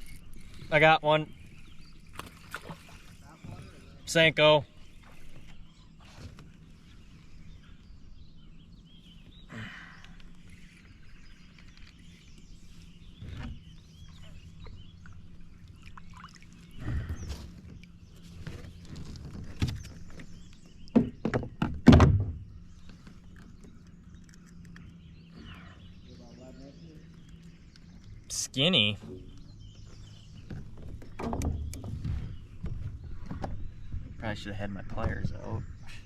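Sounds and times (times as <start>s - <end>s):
knocks and thumps against kayak: 13.0s - 15.1s, 16.7s - 23.8s, 28.9s - 35.8s.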